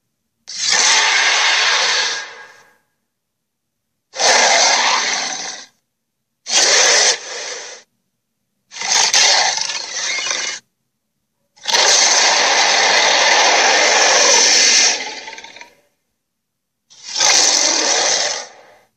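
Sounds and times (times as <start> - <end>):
harsh rasping creature bursts: 0.5 - 2.7, 4.1 - 5.7, 6.5 - 7.9, 8.7 - 10.6, 11.6 - 15.8, 16.9 - 18.9.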